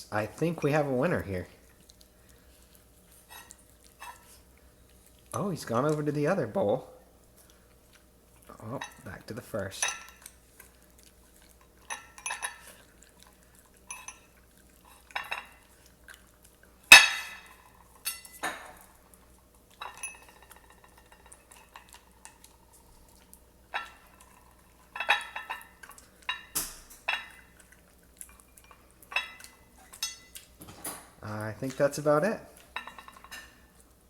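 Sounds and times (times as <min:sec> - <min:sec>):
dog eating from bowl: 0:00.1 - 0:34.0
bowl and kibble clinking: 0:11.7 - 0:13.0, 0:13.8 - 0:15.7, 0:16.9 - 0:18.9, 0:19.7 - 0:22.6, 0:23.7 - 0:31.0, 0:32.6 - 0:33.7.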